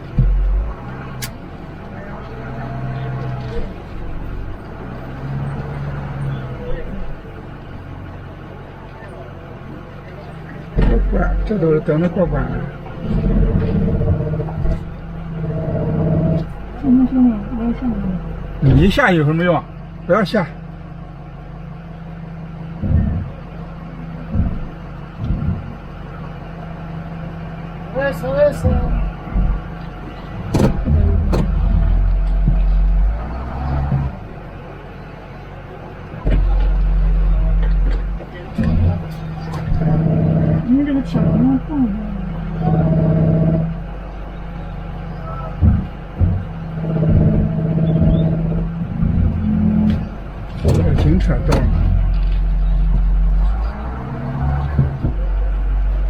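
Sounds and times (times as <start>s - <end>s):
heavy thumps: 0.0s - 0.8s, 10.6s - 11.6s, 12.5s - 16.6s, 22.7s - 26.2s, 28.6s - 33.2s, 36.1s - 41.6s, 42.6s - 53.7s, 54.6s - 56.0s
muffled low bumps: 0.0s - 20.1s, 20.8s - 56.0s
motorhome engine idling: 0.0s - 56.0s.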